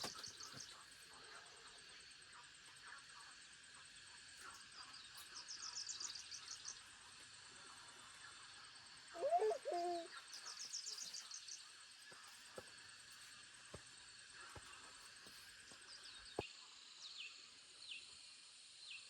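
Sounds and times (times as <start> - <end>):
insect drone: 0.0 - 19.0
low hooting bird call: 9.1 - 10.2.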